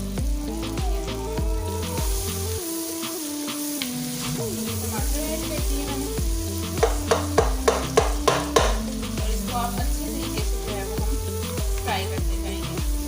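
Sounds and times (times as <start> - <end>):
background music: 0.0 - 13.0
food sizzling in a pan: 0.0 - 13.0
spoon scraping and knocking pan: 6.6 - 8.9.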